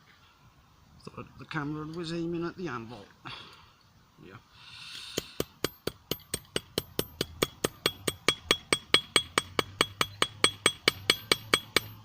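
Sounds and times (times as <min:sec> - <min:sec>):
hammer striking steel on anvil: 0:05.2 - 0:12.0.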